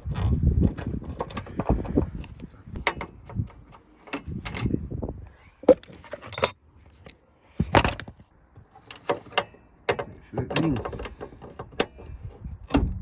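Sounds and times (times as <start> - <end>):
metal hand tools clinking: 5.8 - 6.6.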